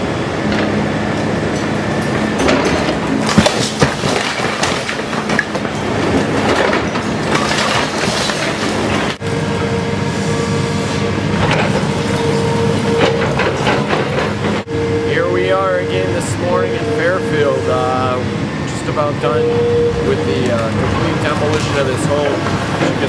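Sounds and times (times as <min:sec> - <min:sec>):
demolition machinery running: 0:00.0 - 0:23.0
engine whine: 0:00.0 - 0:23.0
clanking and scraping debris: 0:01.6 - 0:09.2, 0:11.3 - 0:14.7, 0:20.3 - 0:23.0.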